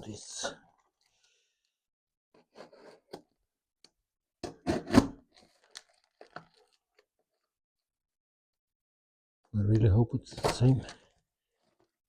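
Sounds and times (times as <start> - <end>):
parcel paper tearing and crinkling: 5.3 - 7.5.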